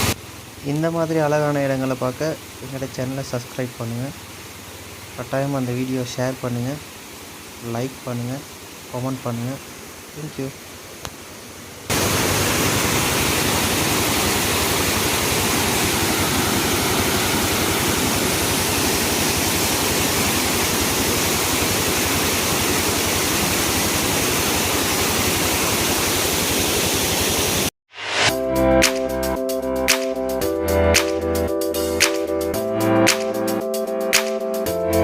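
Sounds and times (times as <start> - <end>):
waterfall rushing: 0.0 - 27.7.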